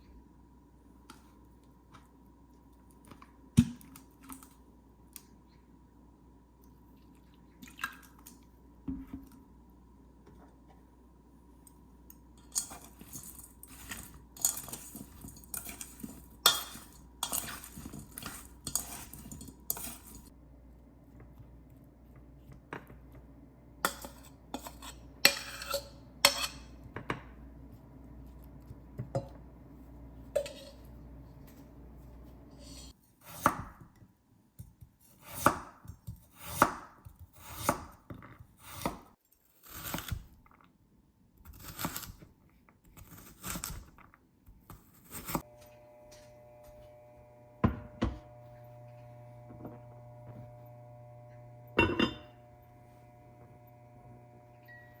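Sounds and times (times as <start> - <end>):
dishes and cutlery clinking: 51.8 - 52.3.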